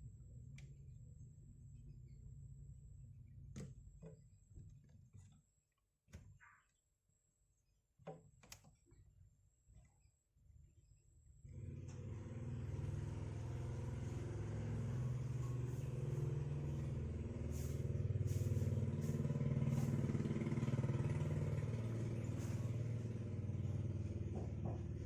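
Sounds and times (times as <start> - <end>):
engine running with low hum: 11.4 - 25.0.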